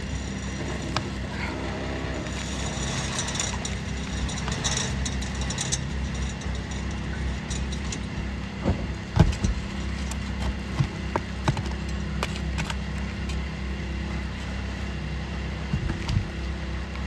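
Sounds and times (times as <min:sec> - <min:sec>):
low engine hum: 0:00.0 - 0:17.0
sharp knocks and clinks: 0:00.3 - 0:12.3.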